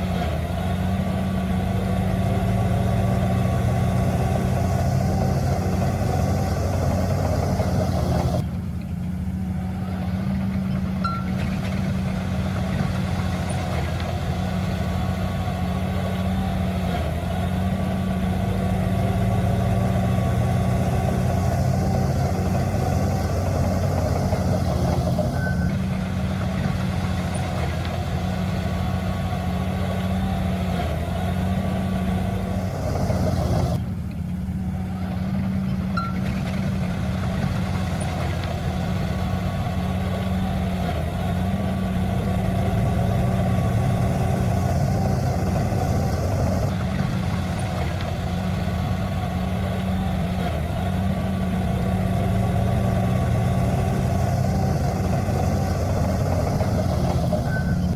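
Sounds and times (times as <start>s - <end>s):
heavy diesel machinery engine drone: 0.0s - 57.9s.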